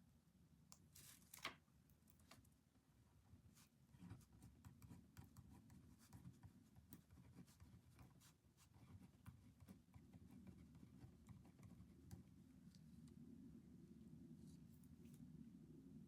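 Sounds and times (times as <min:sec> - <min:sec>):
low steady hum: 0:00.0 - 0:16.0
pen writing on paper: 0:04.0 - 0:12.0.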